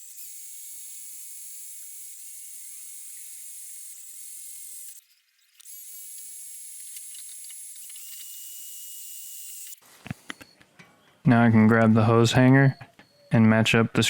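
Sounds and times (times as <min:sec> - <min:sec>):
cordless drill cutting steel: 0:00.0 - 0:10.4.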